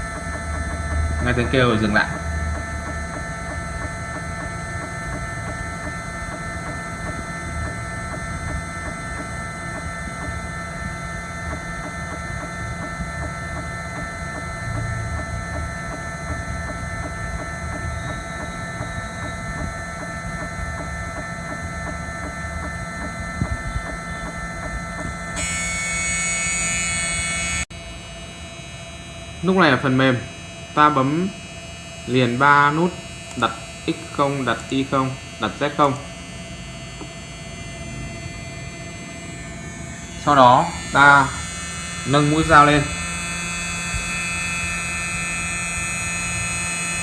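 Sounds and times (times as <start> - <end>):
cutter scratching surface: 0.0 - 27.6
spindle motor whining: 0.0 - 47.0.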